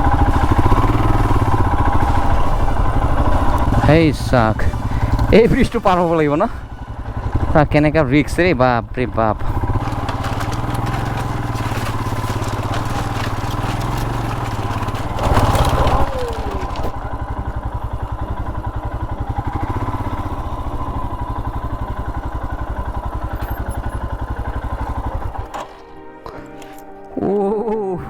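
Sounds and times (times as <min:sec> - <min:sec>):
engine throttle burst and clatter: 0:00.0 - 0:25.9
motorcycle engine running: 0:00.0 - 0:26.7.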